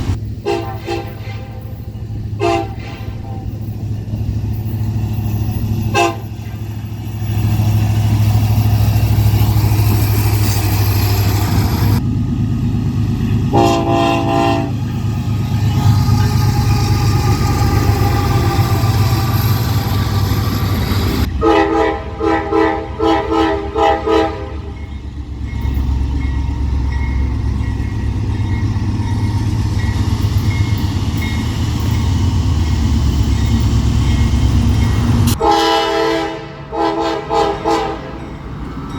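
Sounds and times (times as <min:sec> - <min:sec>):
train running rumble: 0:00.0 - 0:38.9
train air horn blasts: 0:00.4 - 0:03.6, 0:05.9 - 0:06.3, 0:13.5 - 0:14.8, 0:21.2 - 0:24.7, 0:35.4 - 0:38.2.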